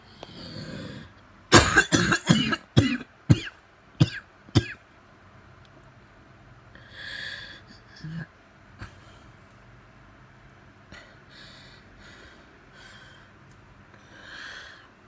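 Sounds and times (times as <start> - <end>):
person coughing: 1.5 - 4.8
wheezing breath: 10.9 - 13.4, 14.0 - 15.0.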